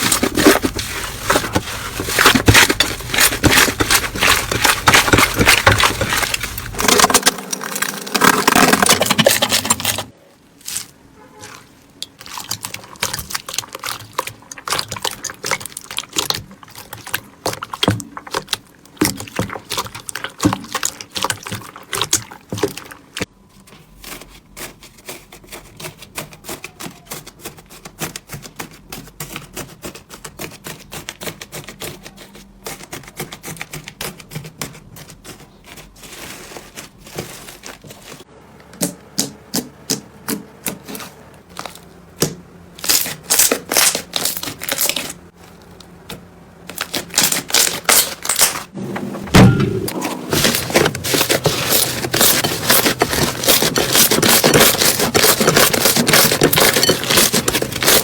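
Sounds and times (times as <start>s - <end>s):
crunchy slime crackling: 0.0s - 23.3s, 40.2s - 48.8s, 49.5s - 58.0s.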